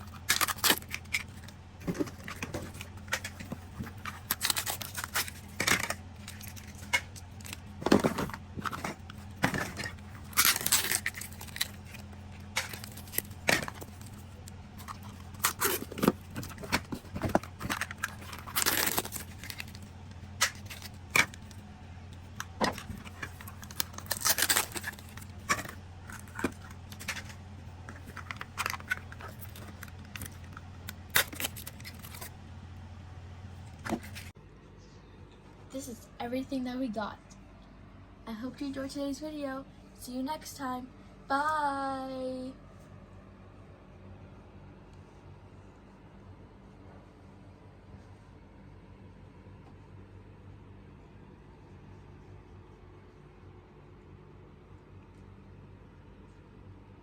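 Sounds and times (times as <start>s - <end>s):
plastic toys clicking and clacking: 0.0s - 19.8s, 22.4s - 32.4s
plastic scraping: 0.0s - 34.3s.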